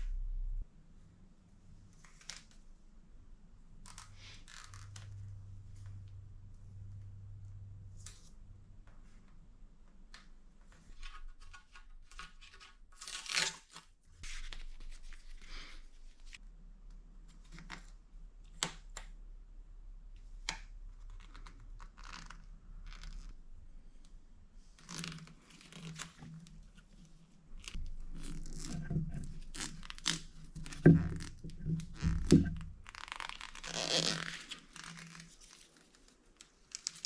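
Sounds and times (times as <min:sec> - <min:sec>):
tape crinkling: 0:24.8 - 0:37.0.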